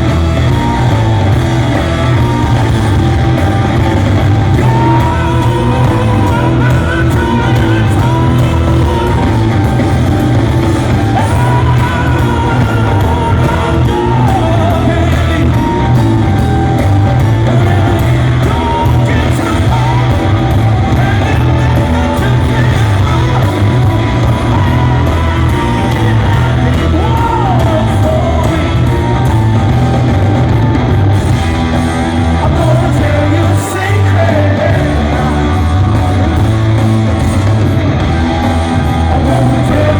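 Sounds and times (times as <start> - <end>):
rock band playing live: 0.0 - 39.9
man singing lead vocal: 4.2 - 30.1, 32.2 - 36.8, 39.0 - 39.9.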